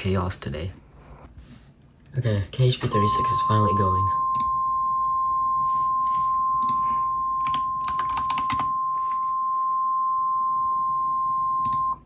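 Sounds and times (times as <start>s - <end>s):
steady alarm tone: 2.8s - 12.0s
keyboard typing: 6.6s - 8.8s.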